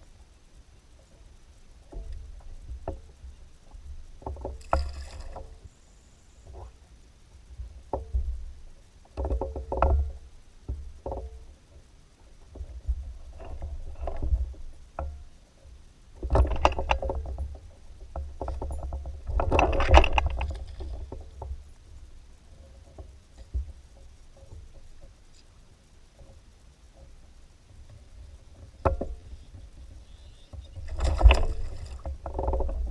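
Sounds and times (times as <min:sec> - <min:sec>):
paddle splashing in water: 0:28.7 - 0:32.9.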